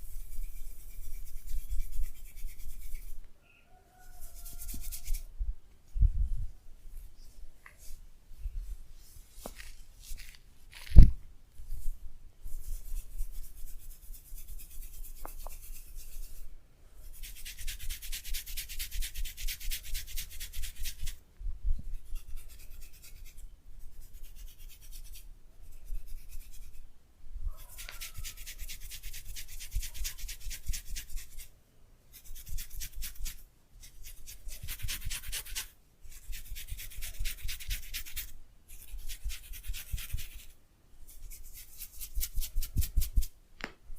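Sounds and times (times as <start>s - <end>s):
hands rubbing through hair: 0.0s - 3.2s, 4.1s - 5.3s, 8.6s - 16.4s.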